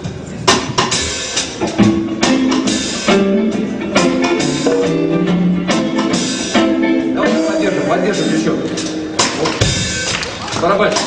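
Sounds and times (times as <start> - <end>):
keyboard chords: 0.5 - 10.2
drum kit strikes: 0.5 - 10.3
guitar chords: 1.5 - 10.1.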